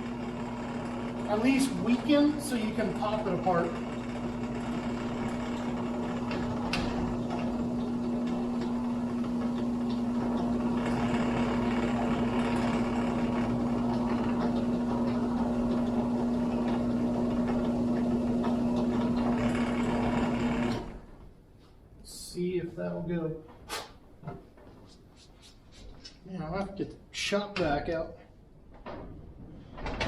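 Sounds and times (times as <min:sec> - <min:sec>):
electric drill humming: 0:00.0 - 0:21.0.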